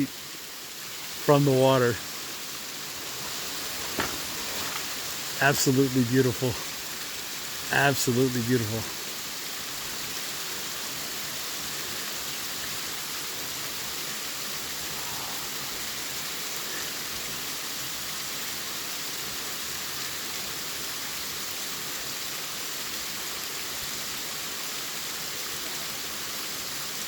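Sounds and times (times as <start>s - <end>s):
waterfall rushing: 0.0s - 20.6s.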